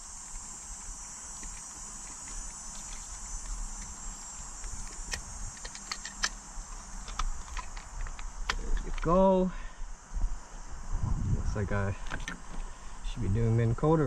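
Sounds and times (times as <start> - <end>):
parts clicking and tapping: 0.3 - 9.2.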